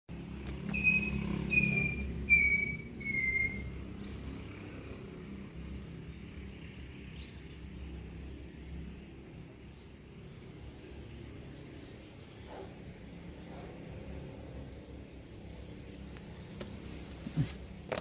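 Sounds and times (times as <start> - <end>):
high-pitched animal calls: 0.7 - 4.1.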